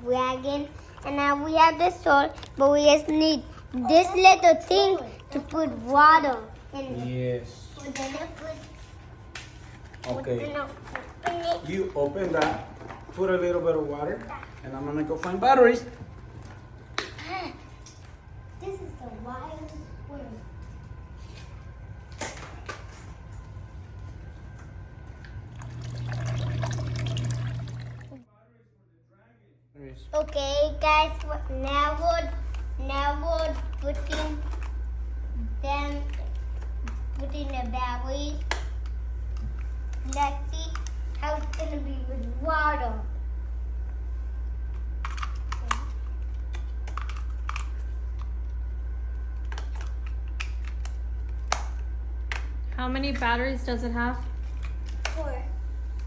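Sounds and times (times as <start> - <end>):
low steady hum: 0.0 - 56.0
water running and trickling: 25.4 - 28.2.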